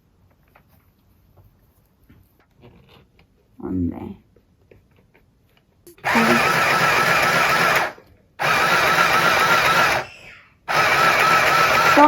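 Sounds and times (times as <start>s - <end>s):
sewing machine stitching: 6.0s - 10.1s, 10.7s - 12.0s.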